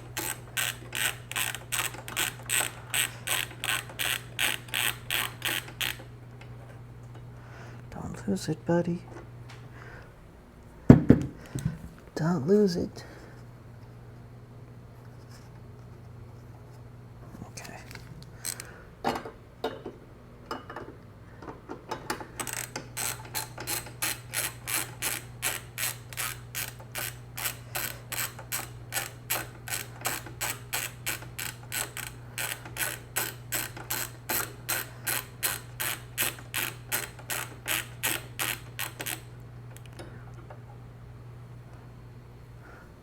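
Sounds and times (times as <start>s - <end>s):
hand ratchet clicking: 0.0s - 6.1s, 21.9s - 39.9s.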